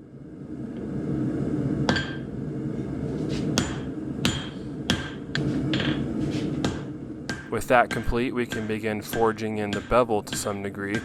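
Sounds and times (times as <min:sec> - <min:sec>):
steady low rumble: 0:00.0 - 0:11.0
hammer ringing on anvil: 0:01.9 - 0:02.3, 0:03.6 - 0:06.1, 0:06.7 - 0:11.0.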